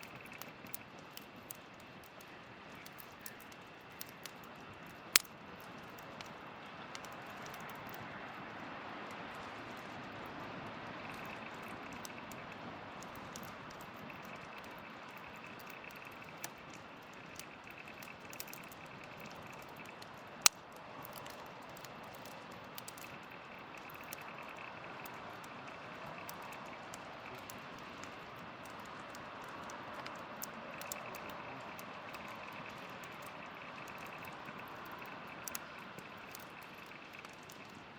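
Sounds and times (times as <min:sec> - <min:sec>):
campfire crackling and popping: 0:00.0 - 0:37.9.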